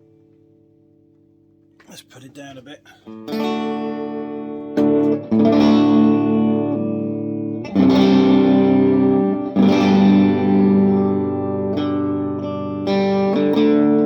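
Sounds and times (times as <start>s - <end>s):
electric guitar chords ringing: 3.1s - 14.0s.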